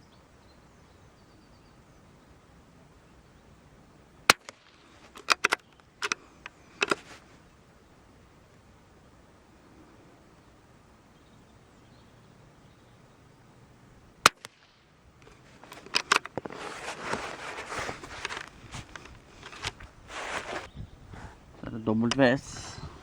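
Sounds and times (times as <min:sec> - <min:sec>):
rifle shot: 0:04.3 - 0:05.5, 0:14.2 - 0:15.0
rifle bolt clicks: 0:04.3 - 0:07.0, 0:14.2 - 0:16.5
rustling handling noise: 0:04.4 - 0:07.7, 0:15.2 - 0:23.0.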